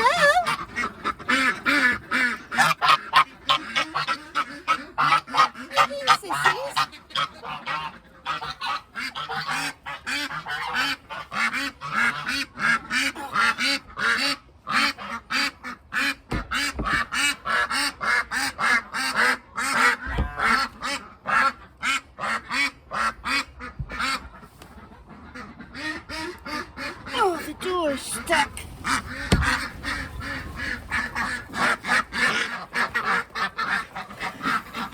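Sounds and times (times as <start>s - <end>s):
ducks quacking: 0.0s - 34.9s
geese honking: 0.0s - 34.9s
dull low thuds: 28.8s - 31.7s.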